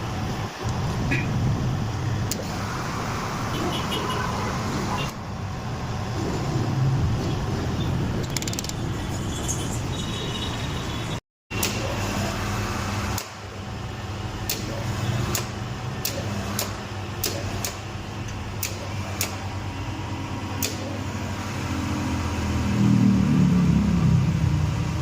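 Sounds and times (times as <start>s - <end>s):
sharp clicks: 8.2s - 8.8s
low mechanical hum: 11.5s - 25.0s.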